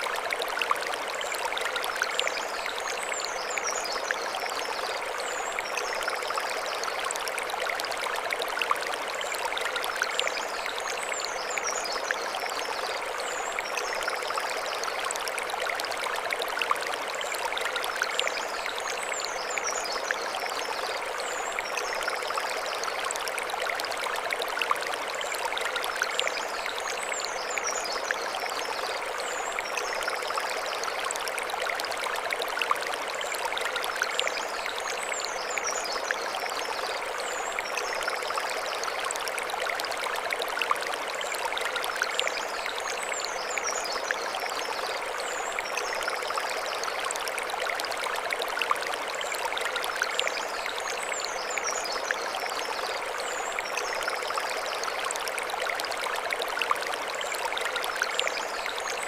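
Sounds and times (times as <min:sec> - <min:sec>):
stream flowing over stones: 0:00.0 - 0:59.0.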